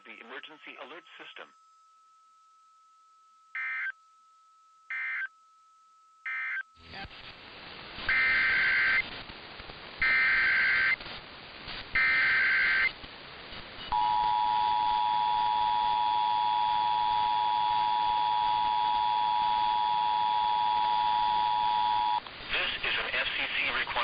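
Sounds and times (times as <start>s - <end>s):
screechy digital data tone bursts: 8.1s - 9.0s, 10.0s - 11.0s, 12.0s - 12.9s.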